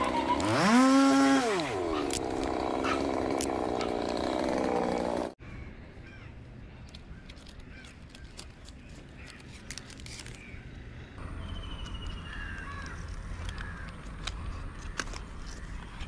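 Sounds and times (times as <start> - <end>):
chainsaw idling: 0.0 - 5.4
faint crow caws: 5.4 - 6.4, 12.3 - 15.2.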